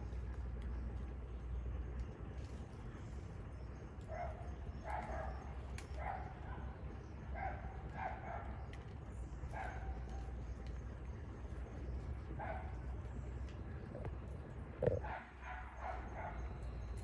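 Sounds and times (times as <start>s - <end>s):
steady low rumble: 0.0s - 17.0s
animal barking calls: 14.8s - 16.6s.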